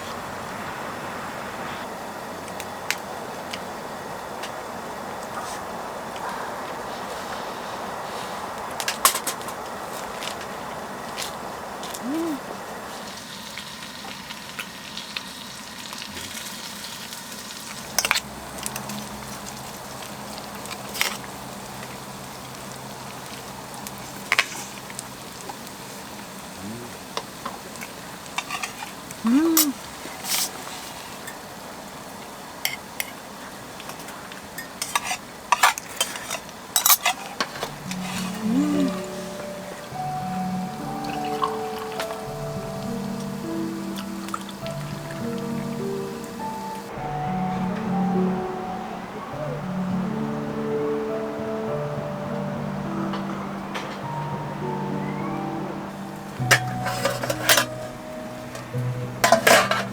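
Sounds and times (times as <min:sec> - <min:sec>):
food sizzling in a pan: 0:00.0 - 0:48.4, 0:55.8 - 0:59.9
utensil clattering against pan: 0:56.4 - 0:57.9, 0:58.5 - 0:59.9.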